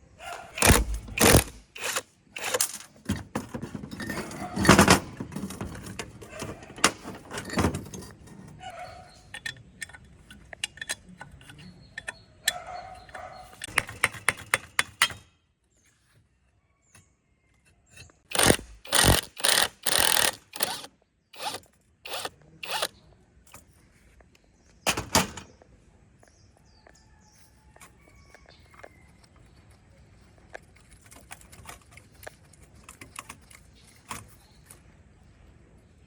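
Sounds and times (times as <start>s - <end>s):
loud scraping on metal: 18.3s - 22.9s.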